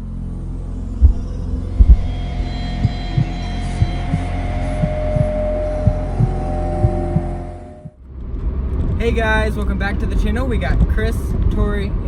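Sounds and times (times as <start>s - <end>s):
dark droning music: 0.0s - 8.9s
low heartbeat-like thumps: 1.0s - 8.0s.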